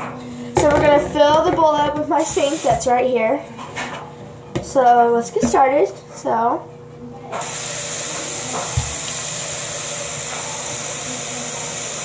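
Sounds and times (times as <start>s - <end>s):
tap water running into bowl: 7.4s - 12.0s.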